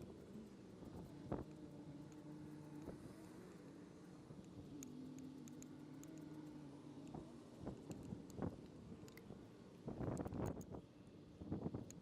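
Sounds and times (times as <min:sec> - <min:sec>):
light clicks: 0:04.4 - 0:09.4, 0:10.0 - 0:10.8, 0:11.7 - 0:12.0.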